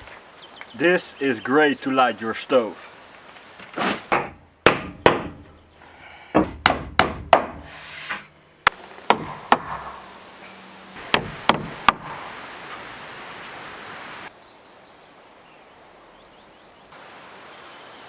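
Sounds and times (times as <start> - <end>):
tool striking wood: 4.1 - 5.5, 6.4 - 8.2, 9.1 - 10.0, 11.1 - 12.2.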